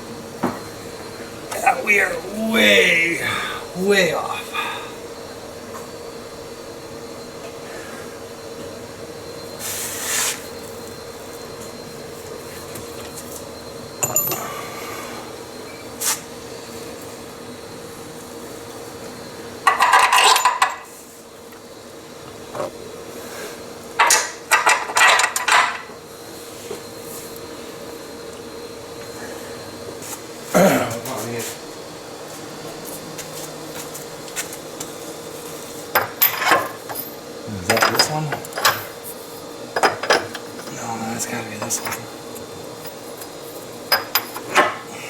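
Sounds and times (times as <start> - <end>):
steady hum: 0.0 - 9.6
tools and metal parts clinking: 14.0 - 14.4, 19.7 - 20.9, 24.0 - 25.9, 36.0 - 39.0, 39.8 - 40.8, 41.6 - 42.1, 42.8 - 44.8.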